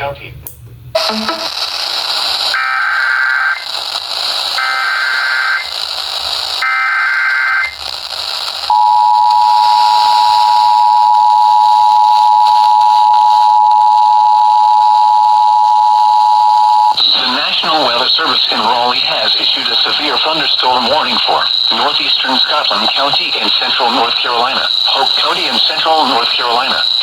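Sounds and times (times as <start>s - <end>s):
two-tone attention signal: 1.0s - 1.5s
warbling data tones: 1.0s - 1.8s, 15.9s - 27.0s
radio hiss: 1.0s - 8.8s, 16.9s - 27.0s.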